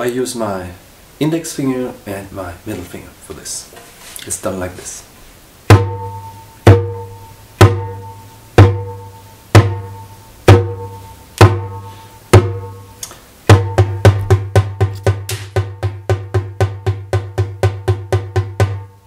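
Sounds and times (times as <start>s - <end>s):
hand drum bass strokes: 5.6s - 19.0s.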